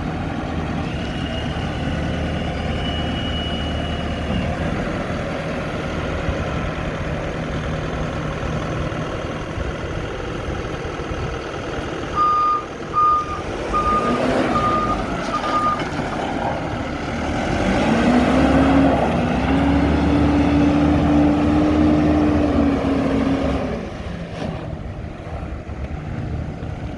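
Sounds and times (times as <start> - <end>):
diesel engine running: 0.0 - 26.9
reversing alarm beeps: 0.9 - 4.6, 12.2 - 15.8.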